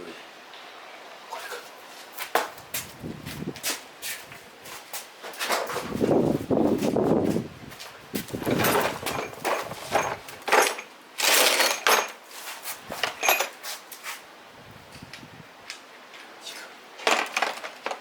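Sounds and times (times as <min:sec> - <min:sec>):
metal tools knocking and clicking: 0:08.5 - 0:12.2.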